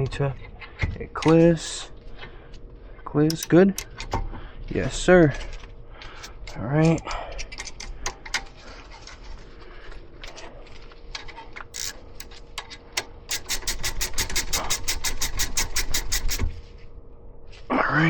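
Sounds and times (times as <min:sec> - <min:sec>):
fast ratchet wrench clicking: 0:03.3 - 0:04.2, 0:11.7 - 0:16.4.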